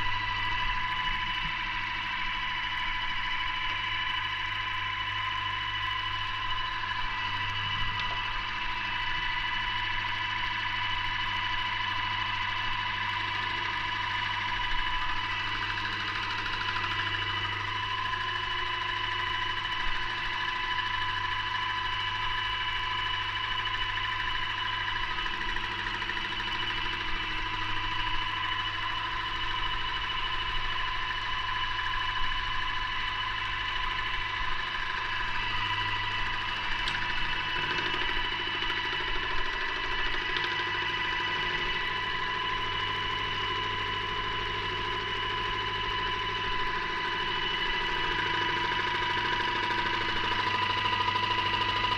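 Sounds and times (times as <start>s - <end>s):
low hum: 0.0s - 13.3s
paint sprayer whine: 0.0s - 51.9s.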